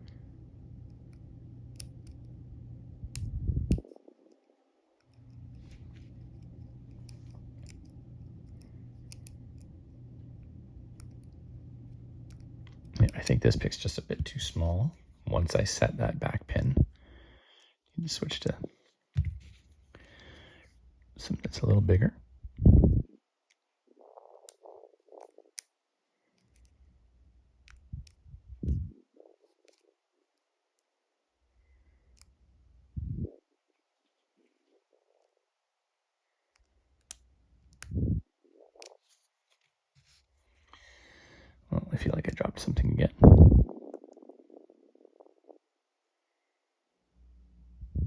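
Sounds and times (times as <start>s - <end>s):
steady low hum: 0.0s - 23.2s, 26.2s - 29.7s, 31.5s - 33.5s, 36.2s - 39.2s, 40.0s - 48.0s
dull low bumps: 43.1s - 43.8s.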